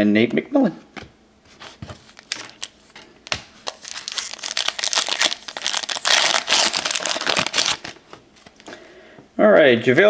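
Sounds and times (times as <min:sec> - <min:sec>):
plastic wrapper tearing and crinkling: 0:02.1 - 0:02.8, 0:03.6 - 0:08.2.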